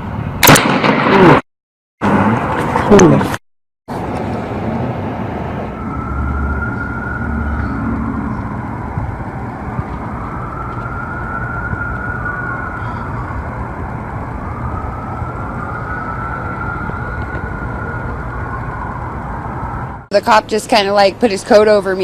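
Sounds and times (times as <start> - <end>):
traffic rumble: 2.0 - 22.0
siren wailing: 5.3 - 20.1.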